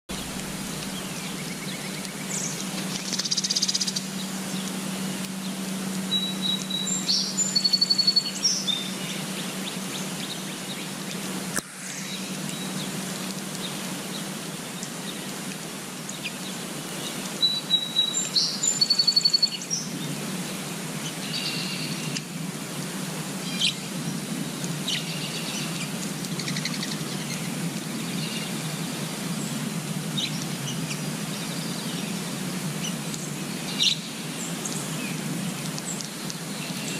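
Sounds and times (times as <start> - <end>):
low background rumble: 0.1 - 10.9
songbirds chirping and singing: 0.1 - 11.0, 16.1 - 19.9.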